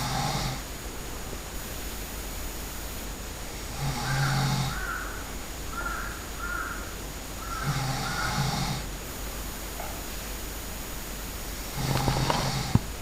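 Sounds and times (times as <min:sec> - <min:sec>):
person snoring loudly: 0:00.0 - 0:00.6, 0:03.6 - 0:04.9, 0:07.6 - 0:08.9, 0:11.7 - 0:12.8.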